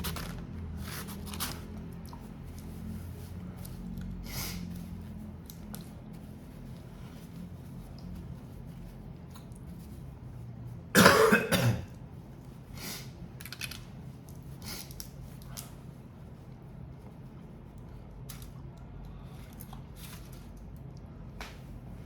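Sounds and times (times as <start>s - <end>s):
steady low hum: 0.0s - 22.0s
person coughing: 11.0s - 12.0s.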